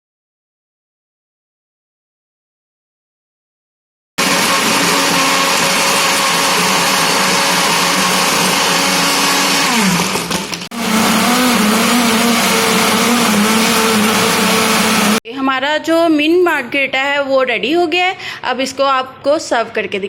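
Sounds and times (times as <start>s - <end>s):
electric blender running: 4.2s - 15.2s.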